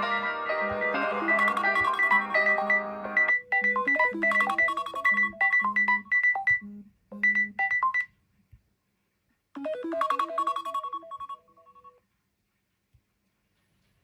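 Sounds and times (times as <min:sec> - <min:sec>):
smartphone ringtone melody: 0:00.0 - 0:08.0, 0:09.6 - 0:12.0.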